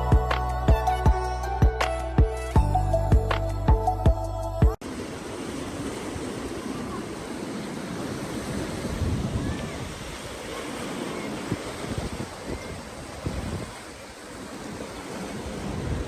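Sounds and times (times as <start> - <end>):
ocean surf washing on beach: 4.8 - 16.0
wind buffeting microphone: 5.2 - 16.0.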